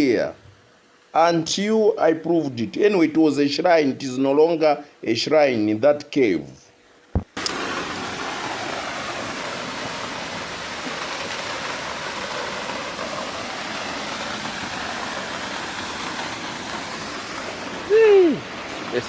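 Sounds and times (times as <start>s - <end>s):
waterfall rushing: 7.4s - 19.0s.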